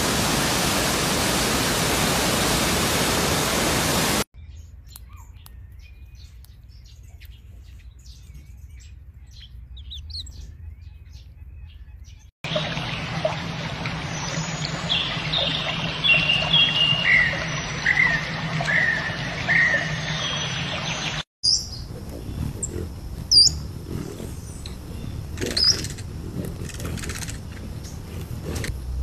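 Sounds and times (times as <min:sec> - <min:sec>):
birds calling: 0:03.4 - 0:29.0
high-pitched bird chirps: 0:09.3 - 0:12.3, 0:15.4 - 0:23.6
steady low hum: 0:21.6 - 0:29.0.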